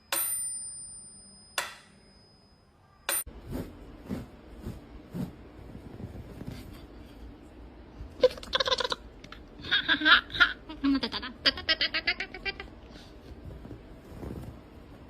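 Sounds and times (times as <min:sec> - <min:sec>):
high-pitched laughter: 0:08.2 - 0:12.8.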